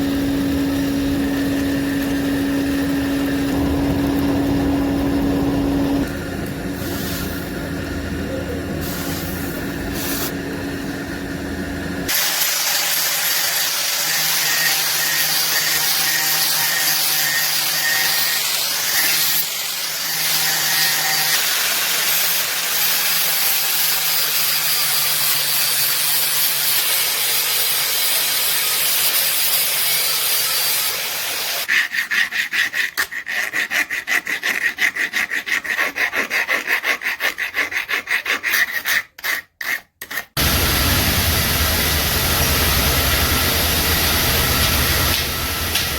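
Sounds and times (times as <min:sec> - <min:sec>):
humming machine: 0:00.0 - 0:12.2, 0:40.4 - 0:45.9
hand-file strokes: 0:31.6 - 0:40.4.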